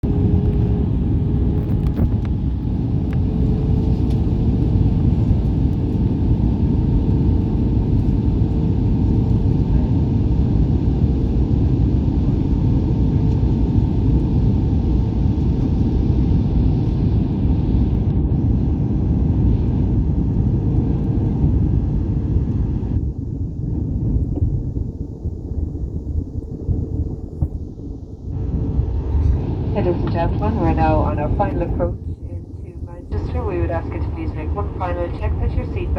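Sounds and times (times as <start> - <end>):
airplane cabin rumble: 0.0 - 35.9
faint steady hum: 22.4 - 35.9.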